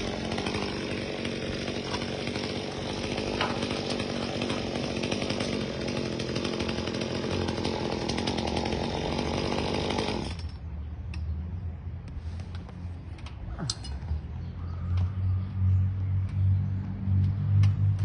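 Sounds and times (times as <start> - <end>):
chainsaw running and cutting: 0.0 - 10.6.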